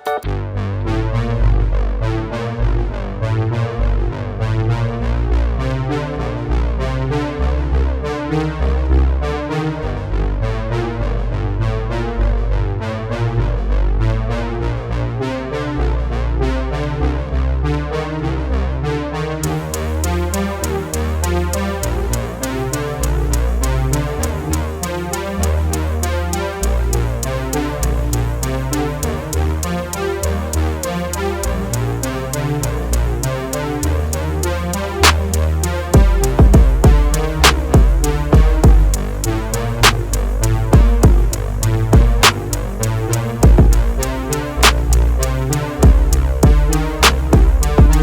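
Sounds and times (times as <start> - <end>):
synthesizer music with heavy bass: 0.0 - 48.0
crisp high ticks: 19.4 - 26.1, 40.8 - 44.8, 45.8 - 48.0
drum machine beat: 19.4 - 26.1, 34.4 - 35.3, 36.0 - 40.2, 40.8 - 45.0, 45.8 - 48.0.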